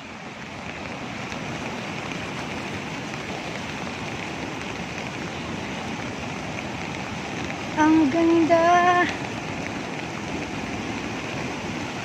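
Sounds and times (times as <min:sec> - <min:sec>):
steady rain falling: 0:00.0 - 0:12.0.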